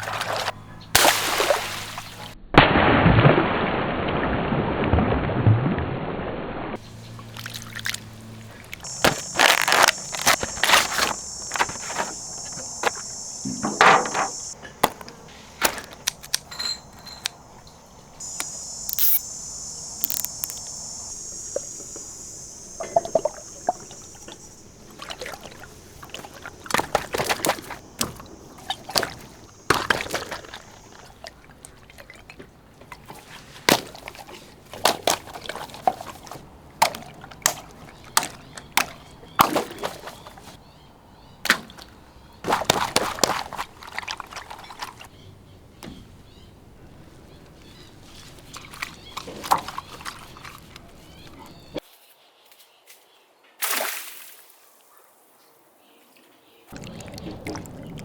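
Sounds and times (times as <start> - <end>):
sharp splashes: 0.0 - 5.8, 6.8 - 40.6, 41.4 - 45.1, 47.7 - 51.8, 53.6 - 54.6, 56.7 - 58.0
water running with hiss: 6.8 - 40.6
handling knocks: 8.9 - 18.8.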